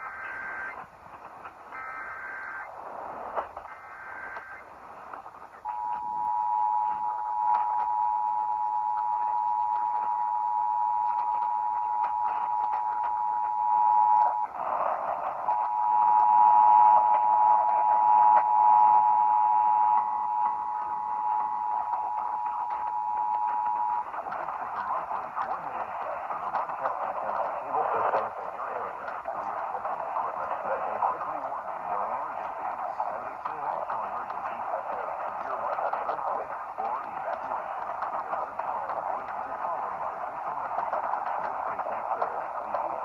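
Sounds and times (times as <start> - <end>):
noise burst: 0.0 - 43.0
radio hiss: 0.0 - 43.0
warbling data bursts: 0.0 - 43.0
two-tone attention signal: 5.6 - 14.6.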